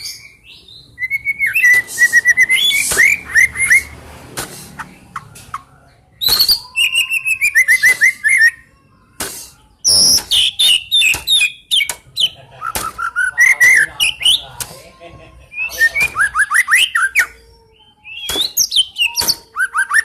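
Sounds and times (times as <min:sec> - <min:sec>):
songbird singing whistled phrases: 0:00.0 - 0:03.9, 0:06.1 - 0:08.9, 0:09.6 - 0:12.4, 0:13.0 - 0:14.4, 0:15.5 - 0:20.0.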